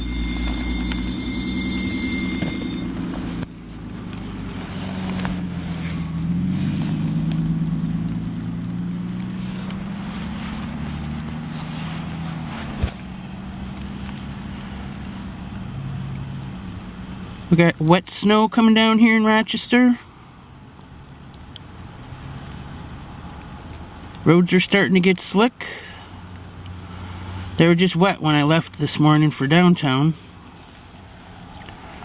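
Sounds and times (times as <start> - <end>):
high whine: 0.0 - 6.1
car engine running: 0.0 - 15.8.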